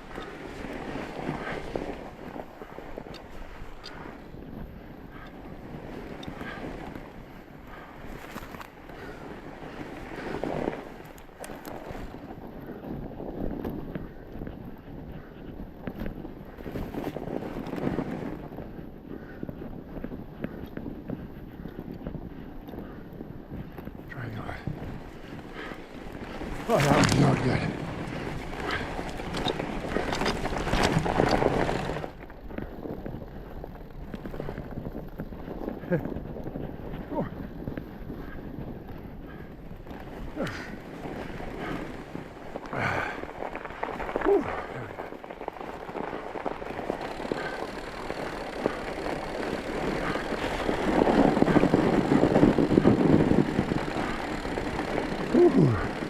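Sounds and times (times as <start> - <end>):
bike tyres rolling on snow: 0.0 - 56.0
bike chains rattling: 24.8 - 32.2, 40.0 - 56.0
wind on microphone: 48.8 - 56.0.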